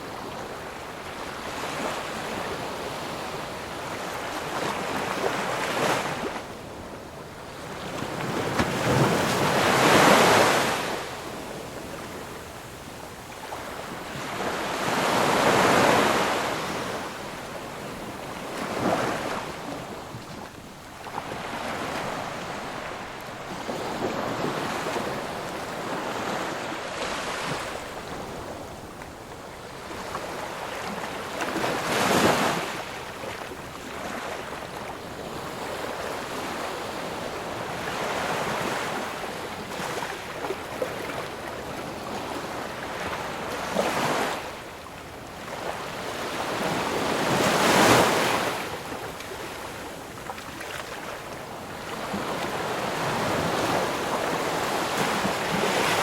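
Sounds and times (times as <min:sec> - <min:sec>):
ocean waves crashing: 0:08.0 - 0:11.4.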